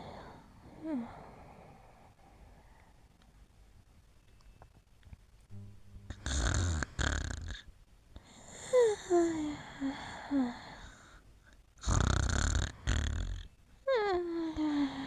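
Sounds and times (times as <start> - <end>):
dog snoring: 6.1 - 7.7, 11.8 - 13.5.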